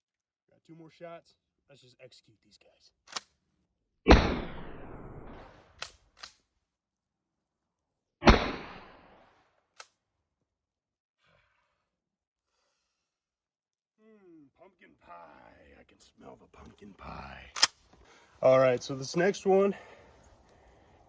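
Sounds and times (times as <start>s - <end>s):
shotgun shots echoing: 4.1s - 5.9s, 8.2s - 9.4s.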